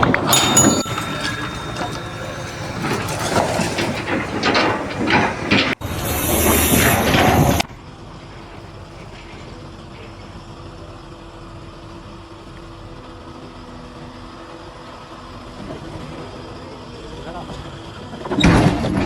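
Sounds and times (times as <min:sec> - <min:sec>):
faint steady tones: 0:00.0 - 0:07.6.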